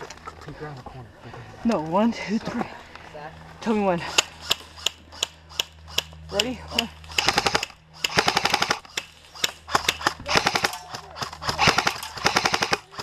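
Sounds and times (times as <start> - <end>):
airsoft guns firing bursts: 7.1 - 13.0.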